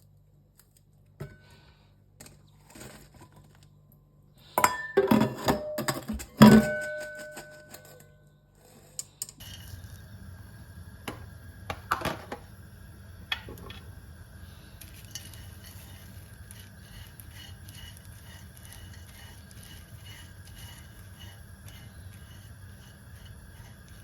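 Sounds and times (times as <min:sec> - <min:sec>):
utensils and cookware clattering: 0:04.5 - 0:09.8
steady low hum: 0:06.1 - 0:24.0.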